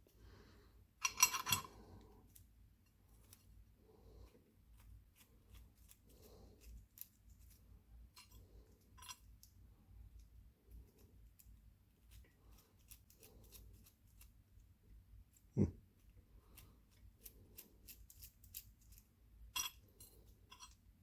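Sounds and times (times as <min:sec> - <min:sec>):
screwdriver clicking and scraping: 0:01.0 - 0:02.4, 0:16.9 - 0:20.8.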